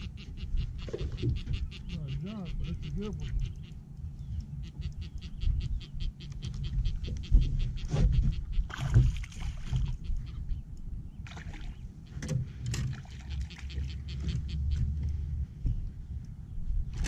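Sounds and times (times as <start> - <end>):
low rumble: 0.0 - 17.0
water splashing: 8.7 - 10.0, 11.2 - 11.8, 12.7 - 14.9.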